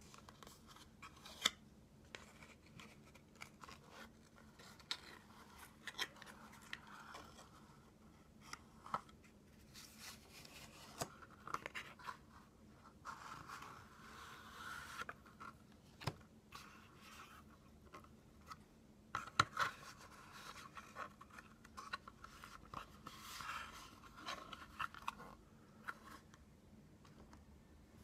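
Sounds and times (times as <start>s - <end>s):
cards sliding and rubbing: 9.6s - 15.6s.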